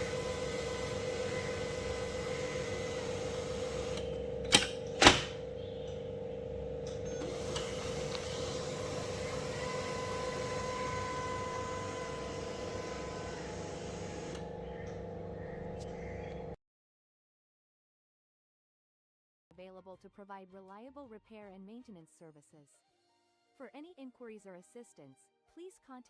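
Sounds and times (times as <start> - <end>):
printer clicks: 0.0 - 6.0, 6.8 - 15.0
laser printer humming: 0.0 - 16.6.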